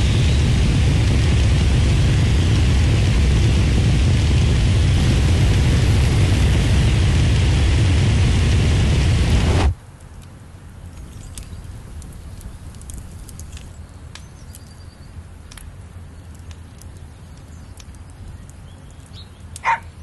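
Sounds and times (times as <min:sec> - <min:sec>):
low steady hum: 0:00.0 - 0:19.6
faint sharp clicks: 0:10.0 - 0:19.7.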